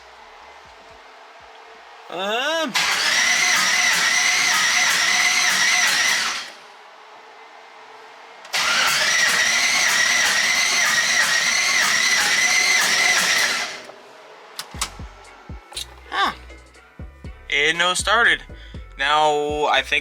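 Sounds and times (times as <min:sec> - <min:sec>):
starter motor cranking: 0:02.8 - 0:06.6, 0:08.5 - 0:13.9, 0:14.6 - 0:15.1.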